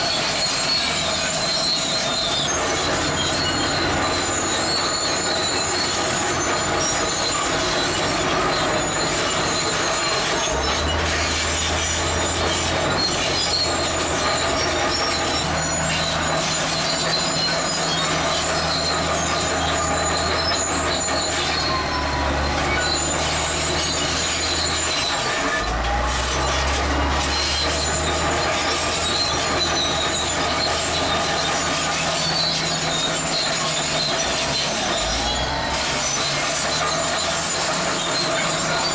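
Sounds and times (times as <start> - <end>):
diesel engine: 0.0 - 38.9
steel tracks squealing: 0.0 - 38.9.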